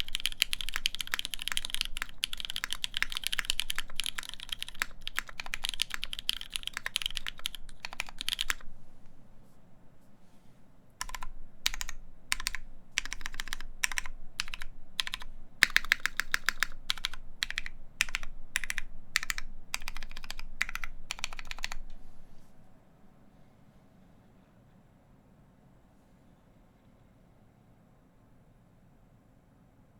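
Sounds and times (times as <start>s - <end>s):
mechanical keyboard typing: 0.0s - 8.7s, 11.0s - 22.0s.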